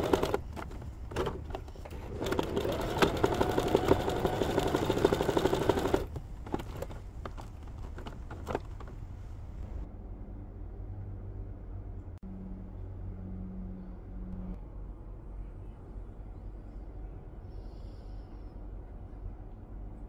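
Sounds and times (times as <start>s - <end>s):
sewing machine stitching fast: 0.0s - 1.3s, 1.9s - 6.9s.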